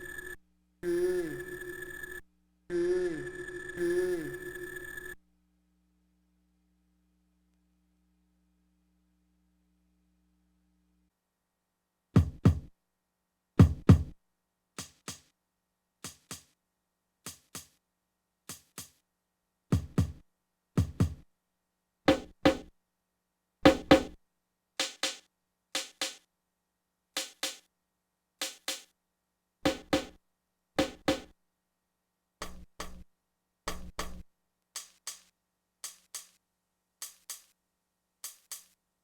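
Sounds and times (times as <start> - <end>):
heavy low kick drum: 12.2 - 12.7, 13.6 - 14.1, 19.7 - 20.2, 20.8 - 21.2.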